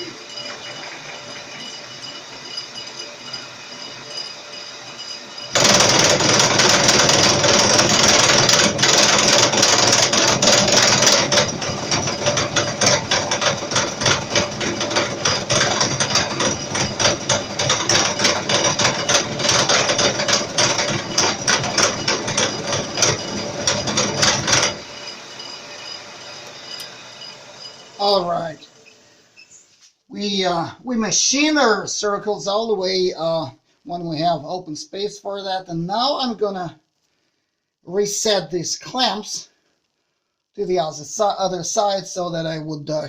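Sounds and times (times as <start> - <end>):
milling machine cutting metal: 0.0 - 28.9
milling machine running: 0.0 - 28.9.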